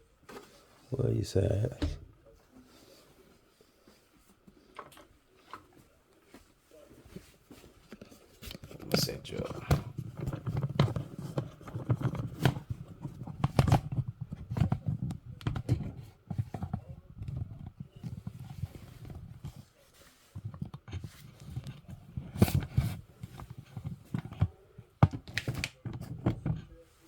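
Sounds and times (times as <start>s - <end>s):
plastic clicks and knocks: 7.9s - 18.3s, 20.5s - 26.7s.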